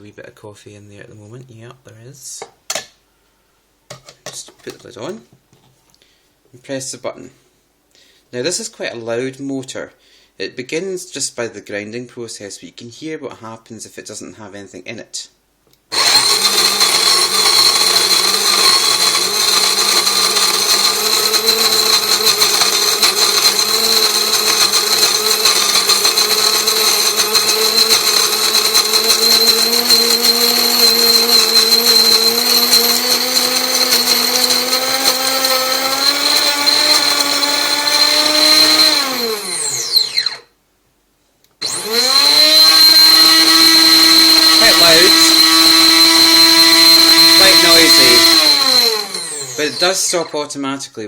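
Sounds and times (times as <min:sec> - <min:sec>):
coffee grinder motor whining: 0:15.9 - 0:40.4, 0:41.6 - 0:50.3.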